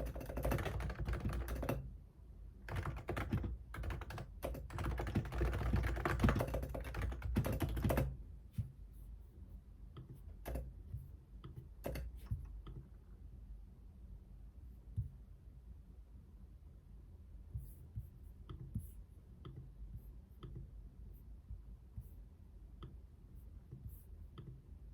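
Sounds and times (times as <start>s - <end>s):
typing on computer keyboard: 0.0s - 1.9s, 2.6s - 8.2s, 10.0s - 10.7s, 11.5s - 12.8s.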